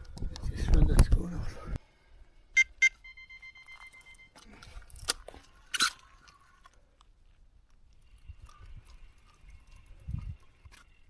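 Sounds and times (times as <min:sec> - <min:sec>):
electronic bite alarm tone: 0:02.6 - 0:04.4
sharp crunching sounds: 0:04.4 - 0:11.0.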